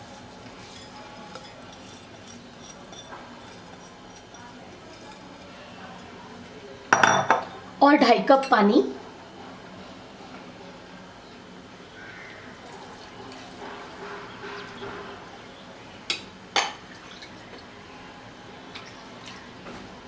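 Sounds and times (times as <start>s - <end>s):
water pouring into a bowl: 16.9s - 17.7s, 18.7s - 19.5s.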